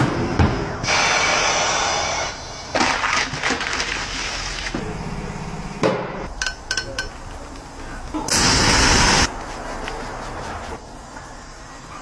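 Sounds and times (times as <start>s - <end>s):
tools knocking and clicking: 6.3s - 7.3s.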